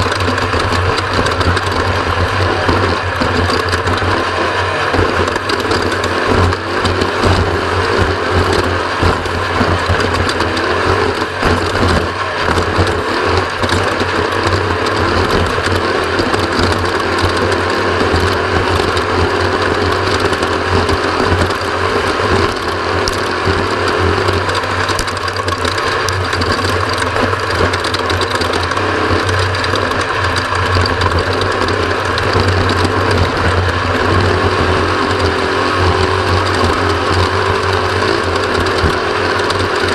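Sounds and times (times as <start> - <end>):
bike rattling and clattering: 0.0 - 39.9
steady rushing noise: 0.0 - 39.9.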